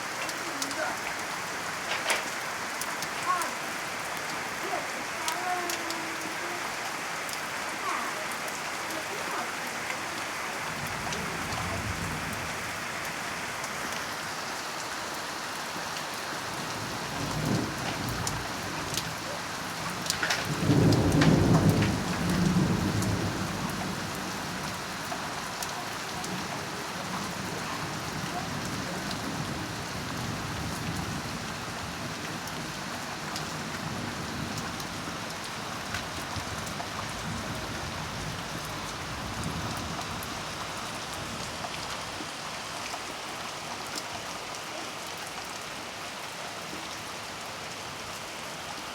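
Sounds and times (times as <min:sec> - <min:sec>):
heavy rain falling: 0:00.0 - 0:48.9
thunder rumbling: 0:10.6 - 0:12.6, 0:16.8 - 0:24.8.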